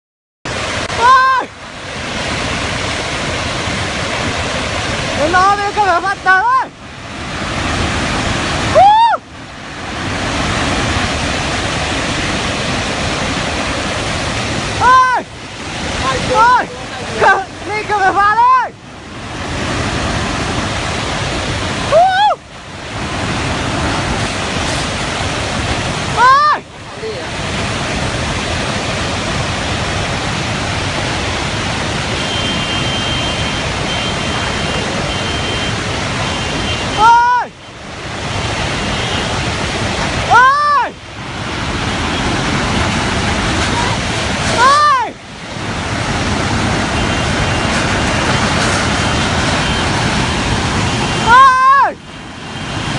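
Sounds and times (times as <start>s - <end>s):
floodwater rushing: 0.5s - 52.9s
person shouting: 0.9s - 1.6s, 6.3s - 6.7s, 8.7s - 9.2s, 14.8s - 15.3s, 16.1s - 18.7s, 21.9s - 22.4s, 26.1s - 27.2s, 37.0s - 37.5s, 40.3s - 41.0s, 43.7s - 45.2s, 51.2s - 52.0s.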